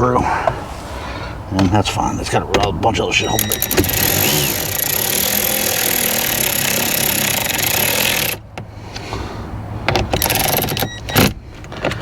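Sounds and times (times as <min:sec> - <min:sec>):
hand-held power tool running: 0:03.6 - 0:08.4.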